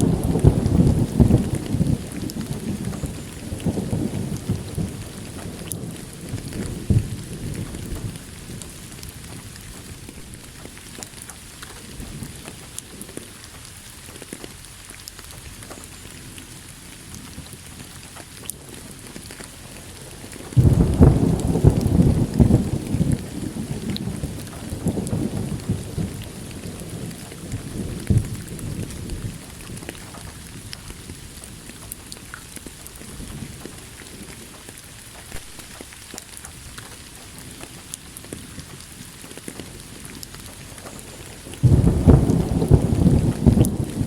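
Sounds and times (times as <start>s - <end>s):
loud thunder crack: 0.0s - 8.2s, 20.6s - 29.9s, 41.5s - 44.0s
rolling thunder: 0.0s - 11.2s, 20.0s - 32.0s, 39.6s - 44.0s
rain hiss: 0.0s - 44.0s.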